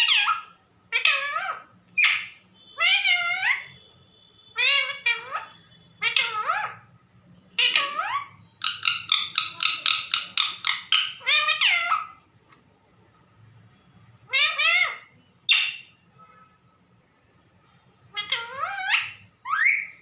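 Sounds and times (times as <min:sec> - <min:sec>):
parrot calling: 0:00.0 - 0:03.9, 0:04.5 - 0:12.3, 0:14.2 - 0:16.0, 0:18.1 - 0:20.0.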